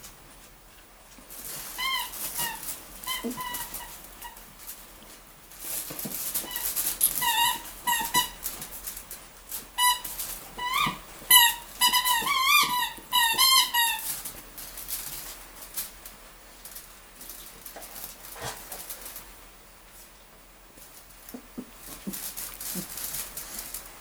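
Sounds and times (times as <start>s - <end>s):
squeaky toy squeaking: 1.8s - 4.4s, 6.5s - 8.4s, 9.8s - 14.0s.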